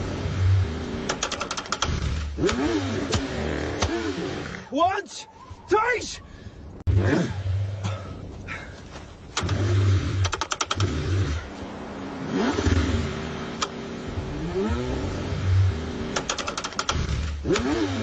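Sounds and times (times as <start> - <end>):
car engine cranking: 0.0 - 4.7, 9.3 - 11.6, 12.2 - 18.0
rapid clicking: 1.1 - 2.7, 10.2 - 10.9, 16.2 - 17.8.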